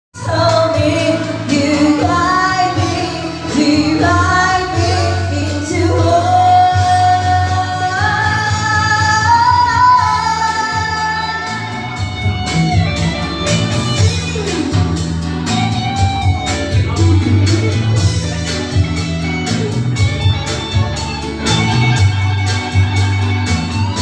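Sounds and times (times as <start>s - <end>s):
woman singing over bass: 0.2s - 13.0s.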